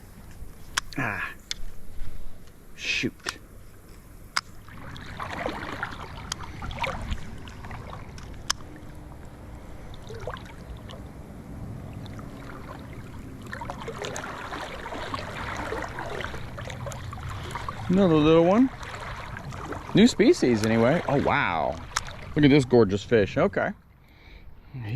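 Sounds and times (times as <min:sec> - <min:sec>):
water splashing: 0:04.4 - 0:23.6
river current rushing: 0:04.6 - 0:22.9.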